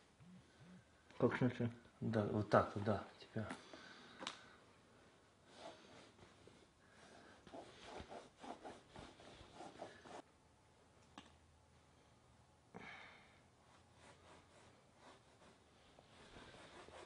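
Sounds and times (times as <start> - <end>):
shoelace rubbing against plastic: 7.5 - 10.2, 16.2 - 17.0.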